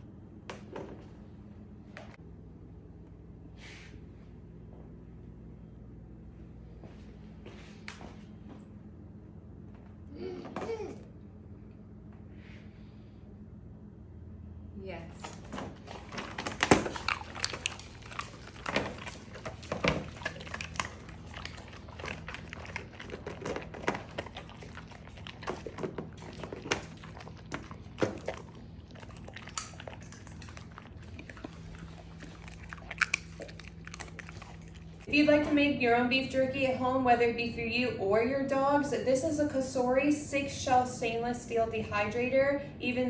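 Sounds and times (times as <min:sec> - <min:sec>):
faint low hum: 0:00.0 - 0:43.0
dog crunching a treat: 0:15.2 - 0:35.5.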